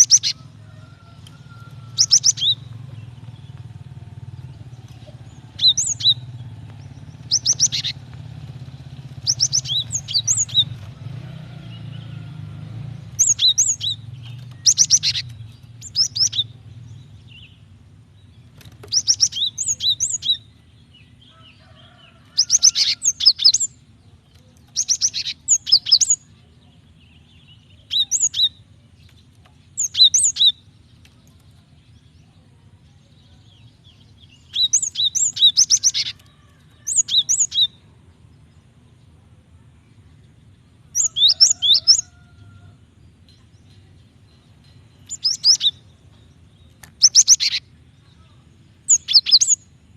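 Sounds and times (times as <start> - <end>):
bird high rapid chirping: 0.0 - 0.4, 1.4 - 8.3, 9.1 - 10.9, 13.1 - 21.2, 22.3 - 26.4, 27.2 - 28.7, 29.6 - 31.2, 33.7 - 37.8, 40.9 - 42.1, 43.6 - 49.8.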